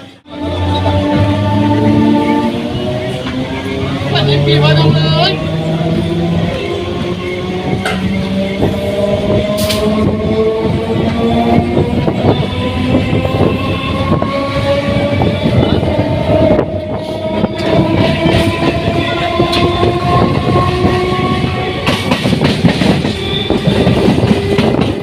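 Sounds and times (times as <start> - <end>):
train wheels clacking on track: 6.5 - 25.0.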